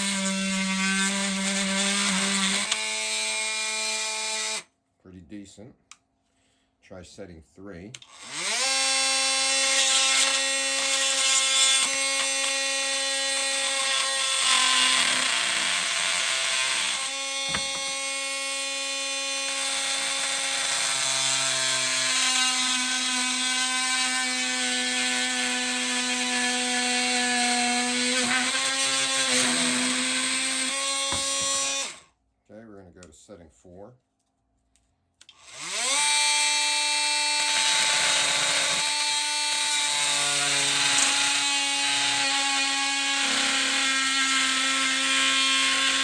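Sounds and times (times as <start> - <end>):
blade rasping through material: 0.0 - 3.4, 8.3 - 32.0, 35.5 - 46.0.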